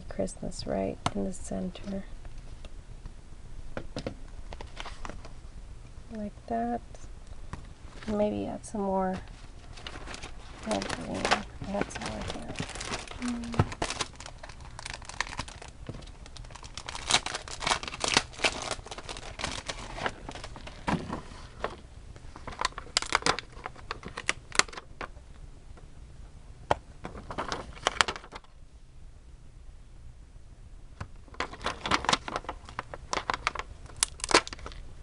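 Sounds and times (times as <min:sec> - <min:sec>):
paper crinkling and rustling: 0:04.5 - 0:05.3, 0:09.1 - 0:25.1, 0:27.0 - 0:28.5, 0:31.3 - 0:34.8.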